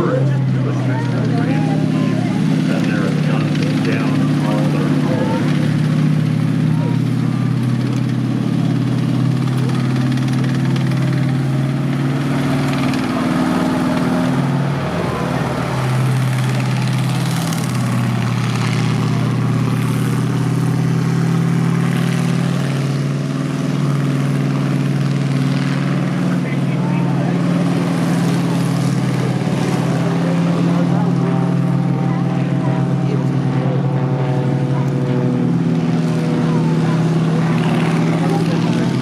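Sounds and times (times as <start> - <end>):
tank engine running: 0.0 - 39.0.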